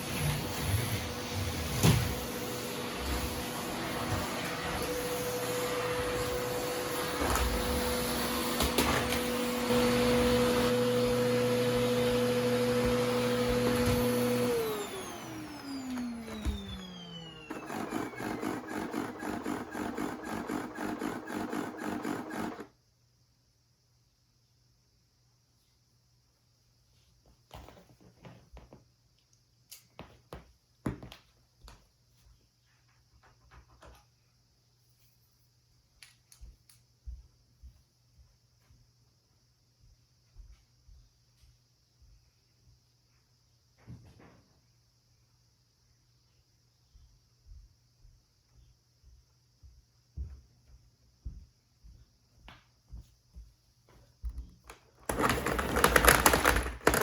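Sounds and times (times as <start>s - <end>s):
vacuum cleaner motor whine: 0.0s - 22.8s, 54.2s - 57.0s
faint room hum: 22.2s - 57.0s.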